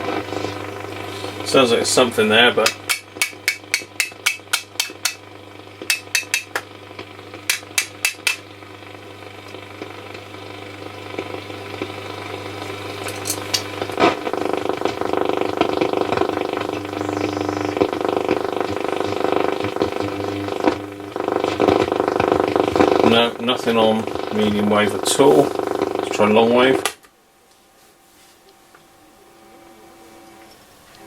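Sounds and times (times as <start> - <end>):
radio static clicks and crackles: 0.0 - 27.1
radio hum and hiss: 0.0 - 31.0
faint radio whistles: 15.0 - 25.7.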